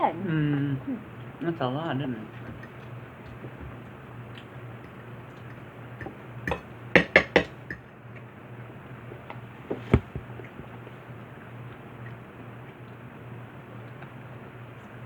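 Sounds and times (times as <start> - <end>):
steady low hum: 0.0 - 15.0
utensils clinking against dishes: 5.4 - 7.8.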